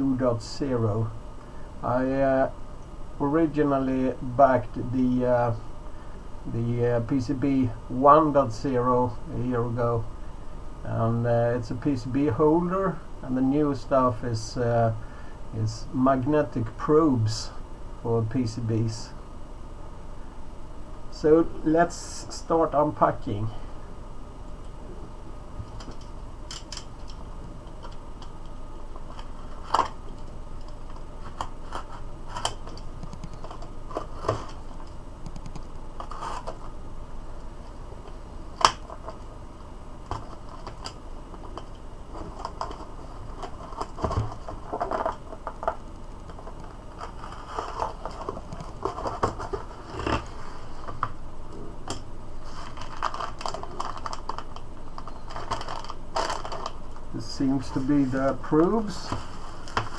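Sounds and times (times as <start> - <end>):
packaging rustling and scraping: 30.8 - 34.7, 36.0 - 36.8, 40.1 - 51.2, 52.4 - 59.9.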